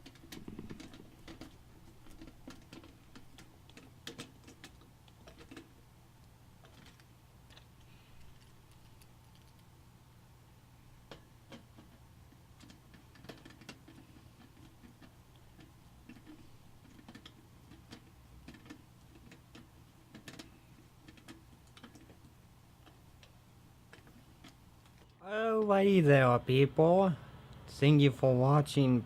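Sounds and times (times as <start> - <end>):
low steady hum: 0.0 - 29.0.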